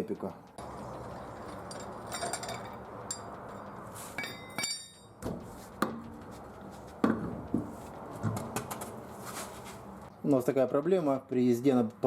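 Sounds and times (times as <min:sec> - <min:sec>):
metallic clinks and knocks: 0:01.4 - 0:05.5.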